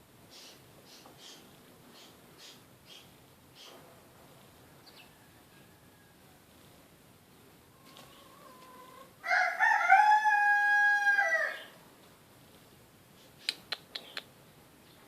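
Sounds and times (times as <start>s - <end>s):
rooster crowing: 4.6s - 6.4s, 8.2s - 11.8s.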